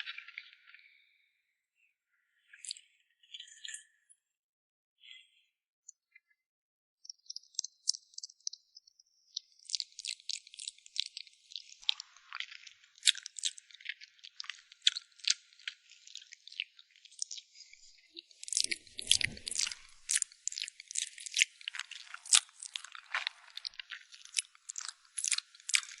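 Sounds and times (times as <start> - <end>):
crunchy chewing: 11.8 - 17.4, 18.4 - 26.0.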